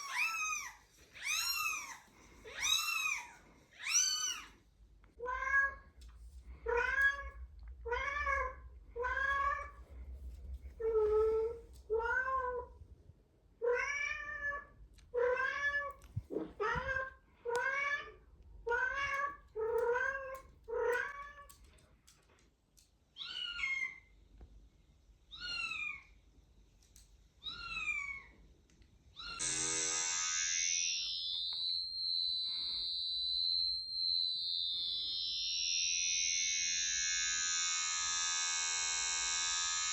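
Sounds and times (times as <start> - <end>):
cat meowing: 0.0 - 4.5, 25.3 - 26.1, 27.4 - 28.3
electronic alarm tone: 29.4 - 39.9.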